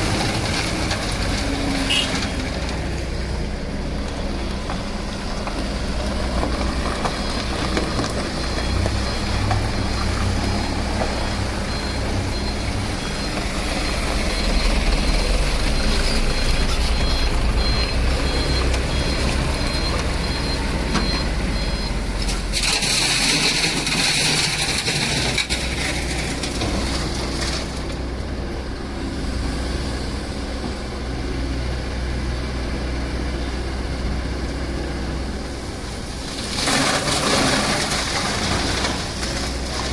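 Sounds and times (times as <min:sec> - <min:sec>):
diesel engine rumbling: 0:00.0 - 0:39.9
high beep: 0:11.2 - 0:22.1.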